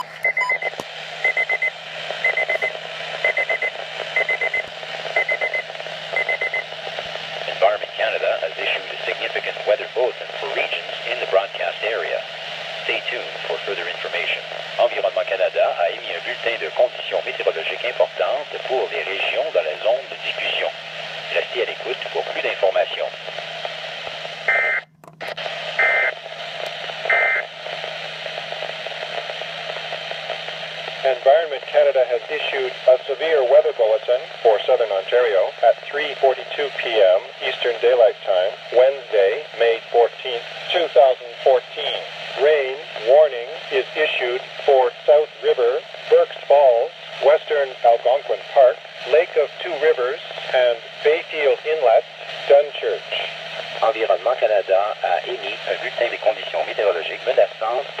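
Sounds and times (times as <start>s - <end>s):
alarm radio beeping: 0.0s - 6.7s, 24.5s - 24.8s, 27.1s - 27.5s
radio hiss: 0.0s - 58.0s.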